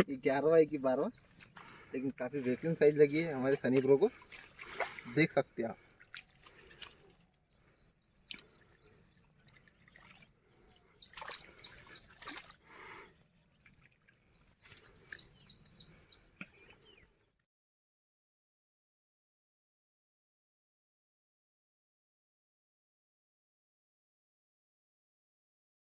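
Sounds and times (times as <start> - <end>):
bird chirping quickly: 7.0 - 17.1.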